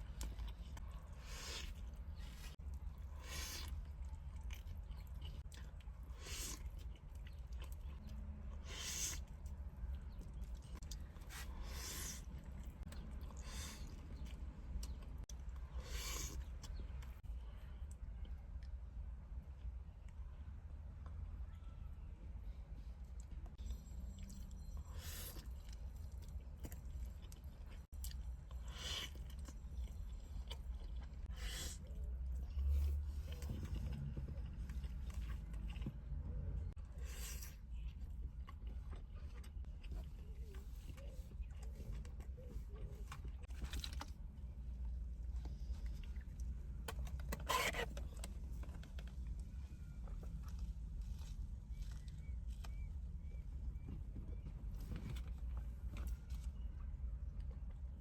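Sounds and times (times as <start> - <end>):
person chewing fried chicken: 0.0 - 18.8, 24.1 - 44.3, 50.0 - 53.9.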